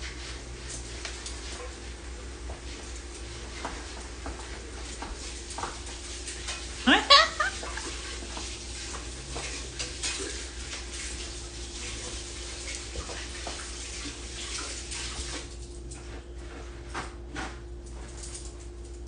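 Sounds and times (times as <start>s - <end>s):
water running from a tap: 4.8s - 15.7s.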